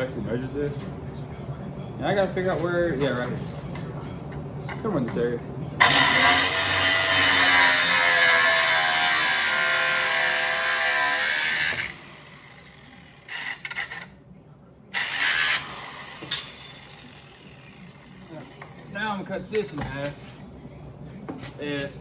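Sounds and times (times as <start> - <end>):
power tool cutting metal: 5.8 - 14.1, 15.0 - 18.8.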